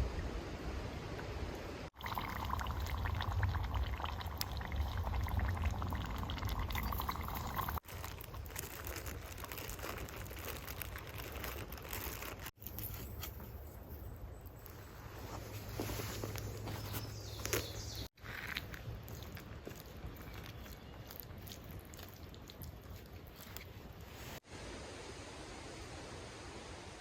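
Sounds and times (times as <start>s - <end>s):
water pouring into a container: 2.0s - 7.8s.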